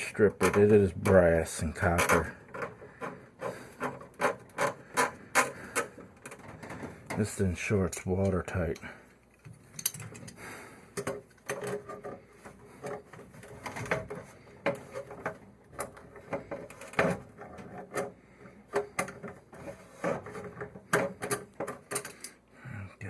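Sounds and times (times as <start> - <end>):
pliers and metal fittings clicking: 7.9 - 10.4.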